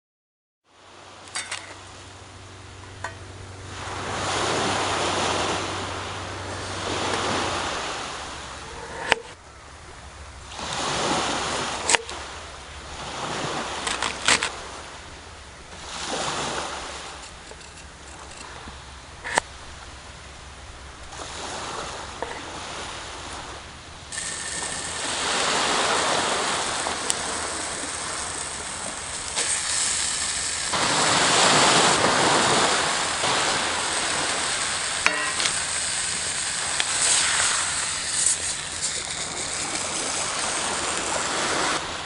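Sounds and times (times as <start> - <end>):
low steady hum: 0.8 - 10.7, 11.3 - 42.0
rushing water: 10.4 - 42.0.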